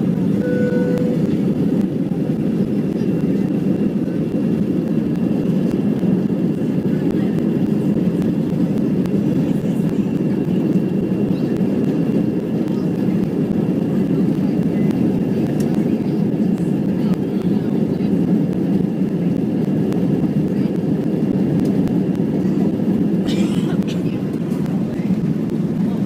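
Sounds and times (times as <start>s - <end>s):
airliner engine rumble in cabin: 0.0s - 26.0s
brief single tone: 0.4s - 1.3s.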